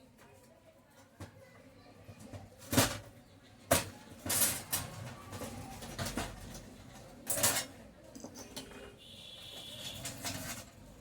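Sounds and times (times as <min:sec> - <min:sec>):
metal parts scraping: 0:09.6 - 0:11.0.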